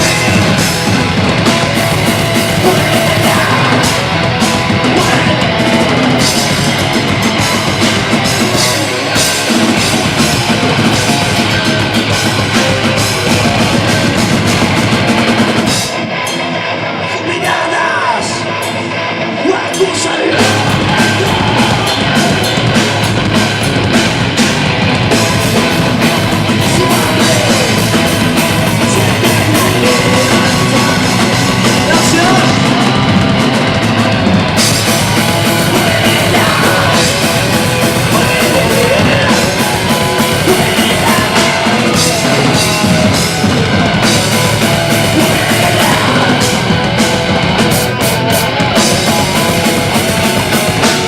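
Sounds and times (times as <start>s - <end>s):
drums and cymbals: 0.0s - 19.0s, 19.7s - 51.0s
live rock band playing: 0.0s - 51.0s.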